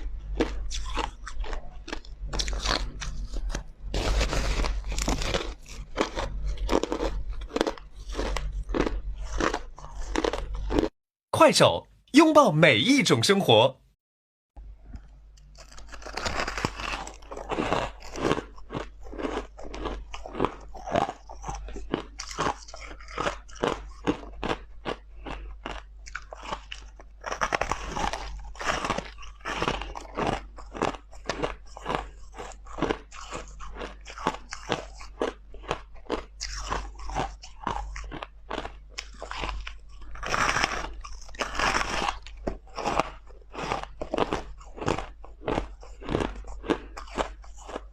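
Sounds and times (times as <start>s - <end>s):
crushed ice crunching: 3.9s - 10.9s, 15.6s - 20.5s.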